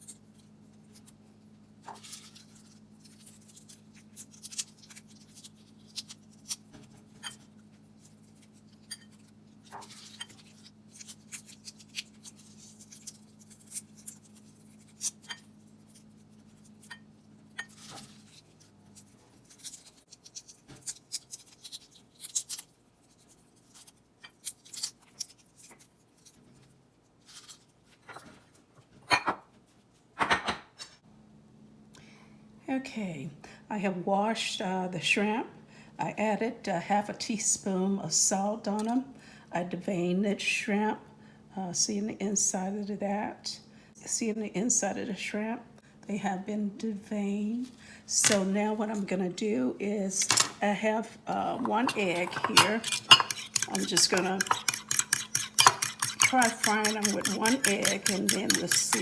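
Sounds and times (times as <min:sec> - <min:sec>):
low steady hum: 0:31.0 - 0:59.0
utensils clinking in a bowl: 0:51.3 - 0:59.0.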